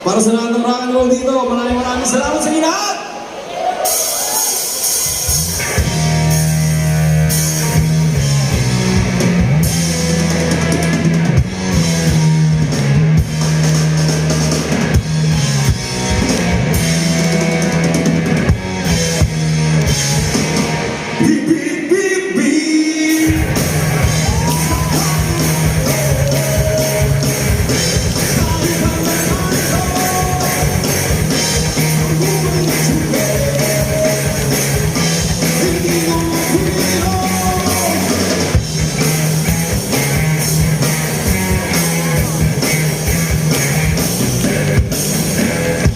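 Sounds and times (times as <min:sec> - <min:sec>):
live rock band playing: 0:03.4 - 0:45.9
sung vocal line: 0:24.2 - 0:27.3, 0:28.2 - 0:31.0, 0:31.8 - 0:34.6, 0:35.4 - 0:38.5.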